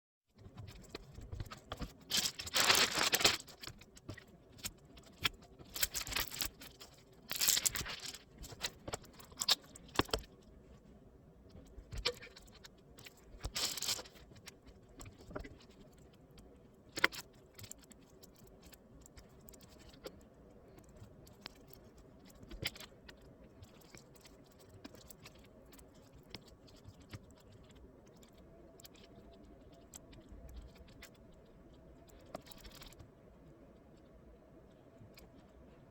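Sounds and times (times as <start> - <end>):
low steady hum: 0.4 - 35.9
small metal parts clicking and rattling: 0.6 - 10.3, 11.9 - 14.4.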